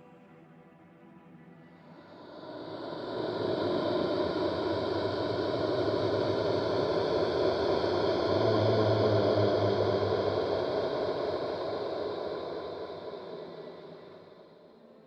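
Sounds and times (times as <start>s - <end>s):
hissing rushing drone: 2.0s - 14.6s
low hum: 2.3s - 14.9s.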